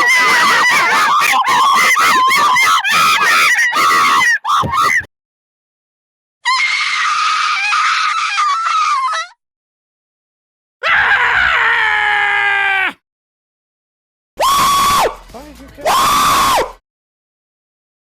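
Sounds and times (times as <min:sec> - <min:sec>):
monkeys screaming: 0:00.0 - 0:05.1, 0:06.5 - 0:09.4, 0:15.8 - 0:16.7
person screaming: 0:00.0 - 0:05.1, 0:10.8 - 0:13.0.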